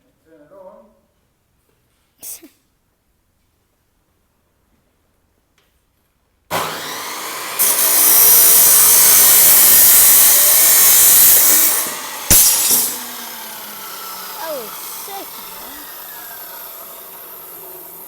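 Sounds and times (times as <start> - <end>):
power tool cutting steel: 6.5 - 18.0.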